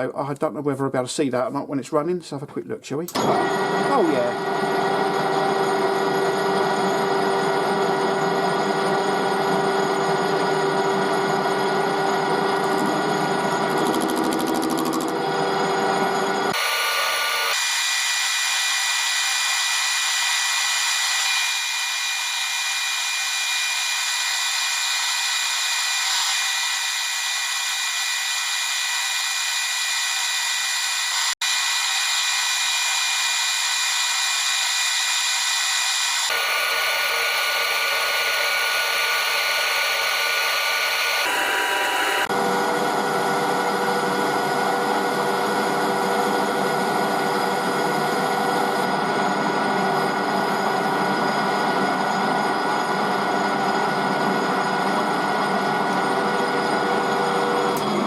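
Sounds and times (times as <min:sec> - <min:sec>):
metal lathe machine whine: 0:03.2 - 0:58.0.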